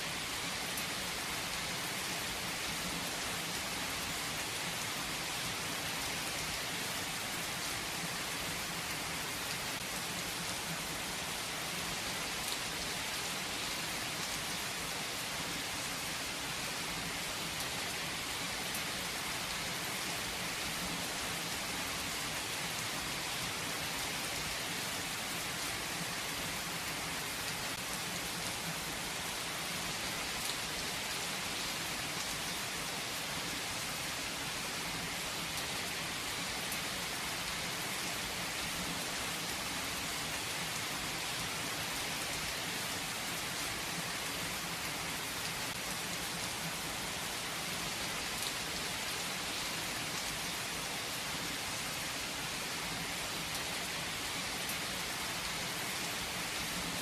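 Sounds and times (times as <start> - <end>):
steady rain hiss: 0.0 - 57.0.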